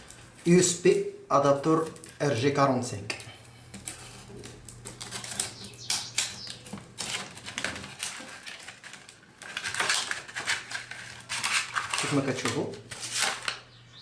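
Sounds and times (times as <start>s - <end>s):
clicks and crackles of cable handling: 3.1s - 13.6s.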